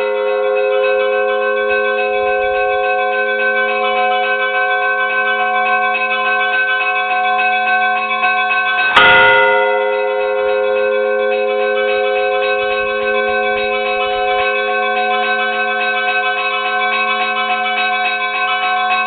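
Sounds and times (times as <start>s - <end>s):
church bells ringing: 0.0s - 19.0s
heavier bell struck: 8.8s - 16.1s.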